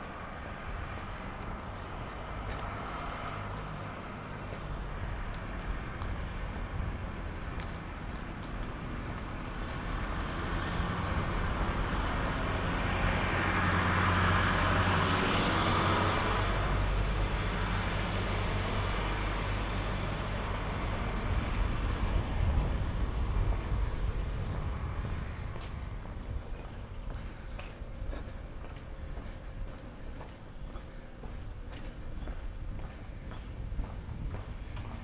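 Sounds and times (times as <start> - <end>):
vehicle passing by: 0.2 - 26.4
steady low rumble: 4.4 - 10.2, 16.6 - 35.0.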